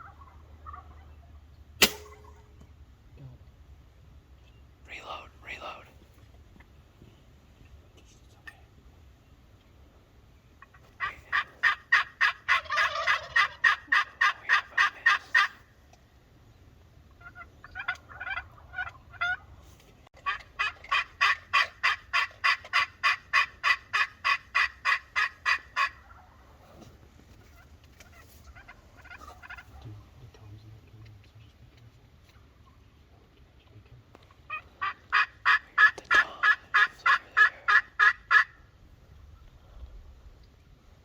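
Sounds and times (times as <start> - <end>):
turkey gobble: 0.0 - 2.0, 10.6 - 15.6, 17.1 - 19.6, 20.2 - 26.6, 27.3 - 30.1, 34.2 - 38.8
wild turkeys yelping: 0.0 - 2.1, 10.6 - 16.1, 17.1 - 30.1, 34.2 - 39.6.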